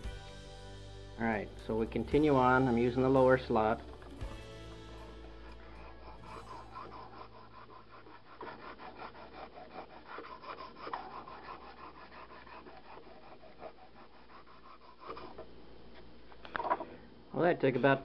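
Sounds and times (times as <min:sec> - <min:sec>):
sharpening stone rasping on knife: 0:04.9 - 0:15.4.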